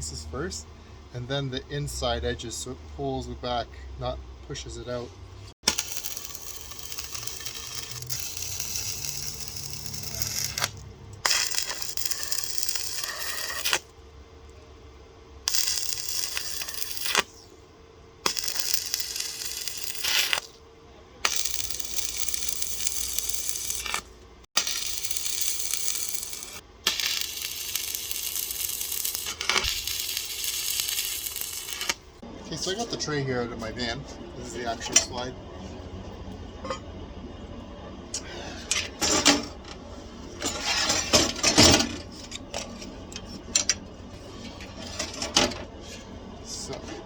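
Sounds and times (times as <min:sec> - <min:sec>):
faint steady hum: 0:00.0 - 0:47.0
welding arc crackling and hissing: 0:05.6 - 0:13.9, 0:15.5 - 0:17.5, 0:18.2 - 0:20.6, 0:21.2 - 0:32.2.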